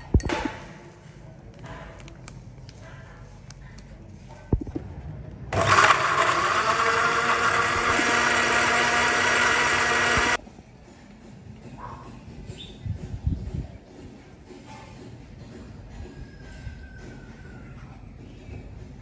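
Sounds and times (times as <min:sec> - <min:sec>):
electric blender running: 0:05.5 - 0:10.4.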